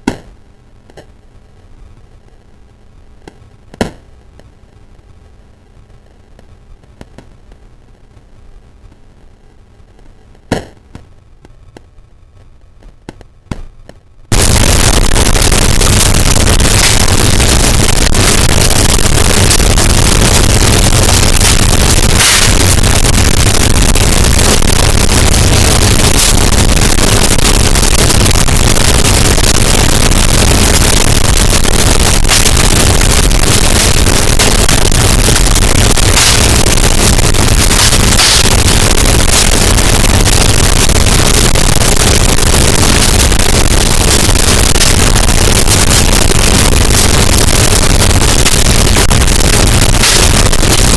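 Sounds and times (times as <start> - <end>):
distorted fire crackling: 0.0 - 50.9.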